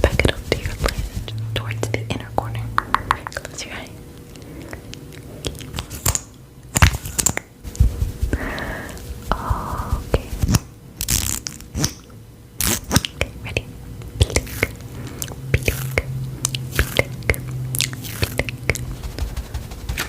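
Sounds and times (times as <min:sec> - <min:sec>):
crinkling rustling noises: 0:00.0 - 0:01.4.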